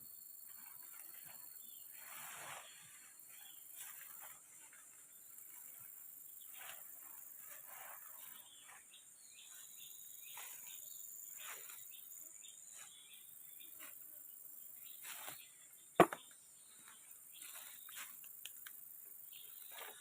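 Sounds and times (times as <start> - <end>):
insect chorus: 0.0 - 20.0
rustles and scrapes: 0.5 - 14.1, 14.8 - 15.6, 16.8 - 18.6, 19.4 - 20.0
sharp knock: 16.0 - 16.2.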